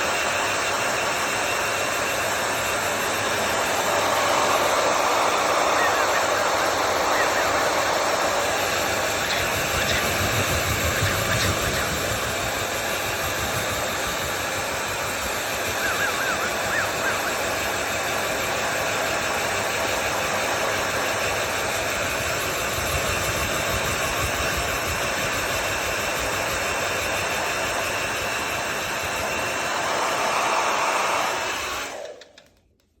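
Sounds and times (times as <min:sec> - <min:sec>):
hair dryer running: 0:00.0 - 0:32.8
cockatiel chirps: 0:05.3 - 0:12.4, 0:15.7 - 0:17.6.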